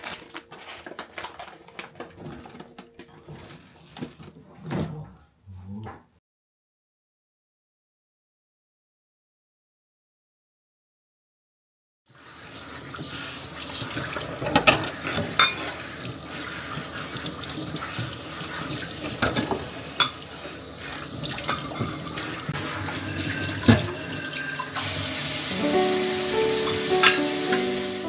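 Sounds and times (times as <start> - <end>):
tap water running into sink: 12.2 - 28.0.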